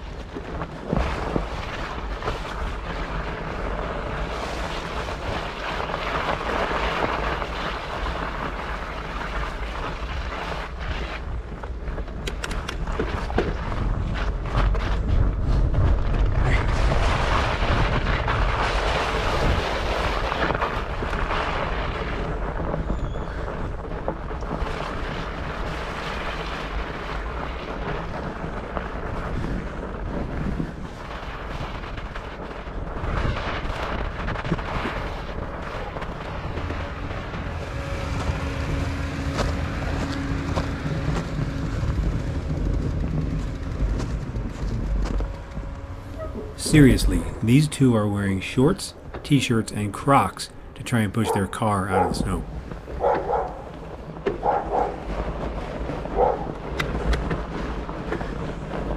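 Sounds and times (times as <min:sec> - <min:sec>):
wind buffeting microphone: 0:00.0 - 0:47.4, 0:52.0 - 0:58.9
bike tires rolling through snow: 0:00.0 - 0:49.2, 0:51.5 - 0:58.9
faint steady hum: 0:34.8 - 0:54.6.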